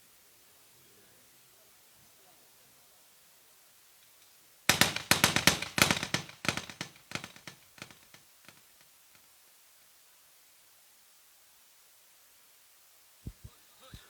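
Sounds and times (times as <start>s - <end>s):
firecrackers going off: 4.7s - 8.5s.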